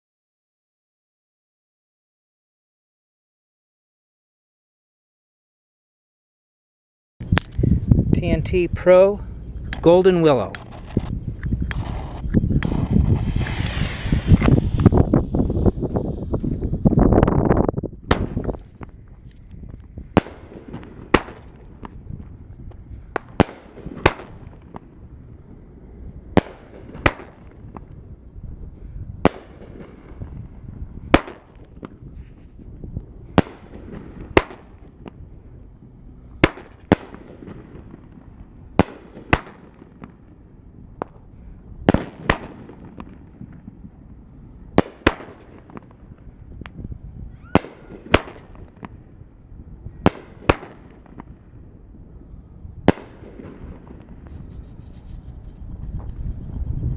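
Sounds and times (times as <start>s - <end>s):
firework shell launching thump: 10.5s - 16.4s
firework burst bang: 11.7s - 16.3s.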